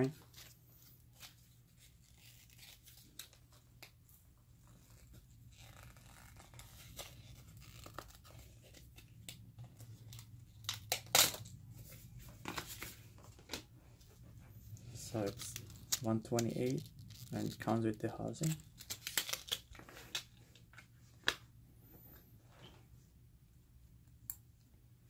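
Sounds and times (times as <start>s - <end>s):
plastic packaging tearing: 4.7s - 9.3s, 15.2s - 20.4s.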